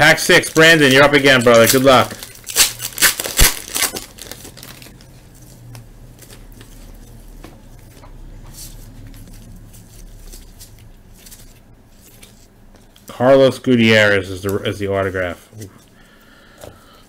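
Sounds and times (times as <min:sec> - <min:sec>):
wrapper crinkling as torn open: 0:00.2 - 0:06.3
cards rustling and clicking: 0:00.3 - 0:13.1.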